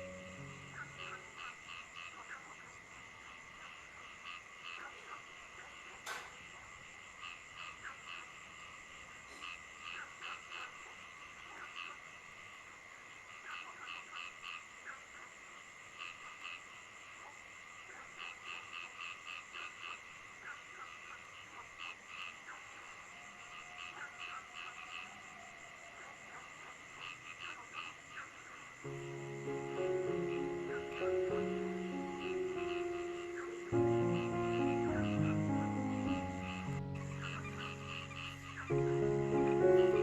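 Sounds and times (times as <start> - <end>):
high-pitched night chorus: 0.0 - 2.3, 28.8 - 40.0
frogs croaking: 0.0 - 40.0.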